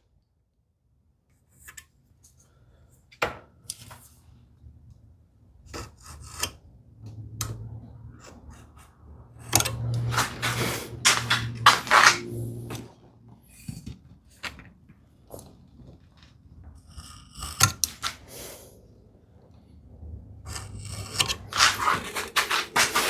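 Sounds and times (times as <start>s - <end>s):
marking tool scraping wood: 8.2s - 12.8s, 16.9s - 18.3s, 20.5s - 23.0s.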